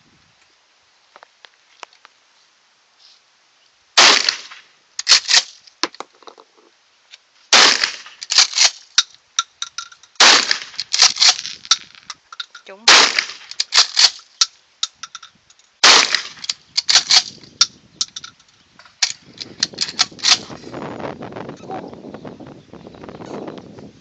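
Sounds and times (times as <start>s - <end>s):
gunshots echoing: 4.0s - 4.6s, 7.5s - 8.7s, 10.2s - 11.4s, 12.8s - 14.1s, 15.8s - 17.2s.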